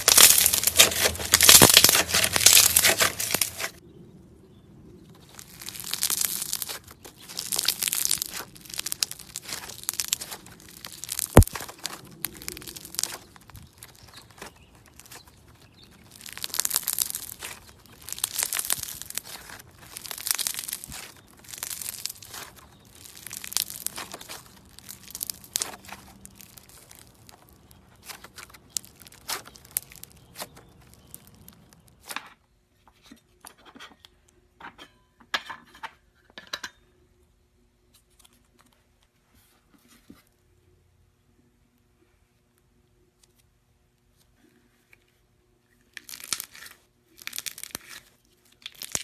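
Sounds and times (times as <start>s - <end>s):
slime crackling and popping: 0.0s - 3.8s, 5.2s - 32.1s, 45.8s - 49.0s.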